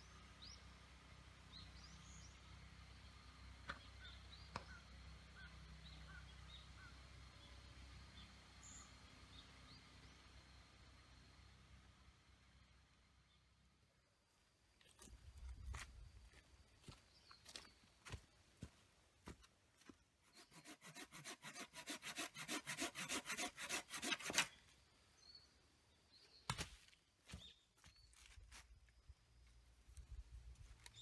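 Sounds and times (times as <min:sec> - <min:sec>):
hand saw cutting wood: 0:20.2 - 0:24.6.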